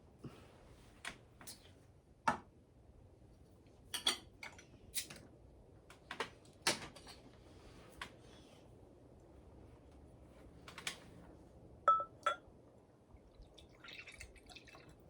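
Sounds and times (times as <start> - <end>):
bottle and glass clinking: 11.9 - 12.4.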